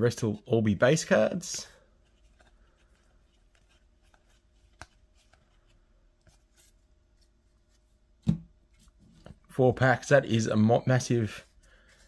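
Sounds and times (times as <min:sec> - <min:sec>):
trading cards flicking and rustling: 0:02.0 - 0:07.9.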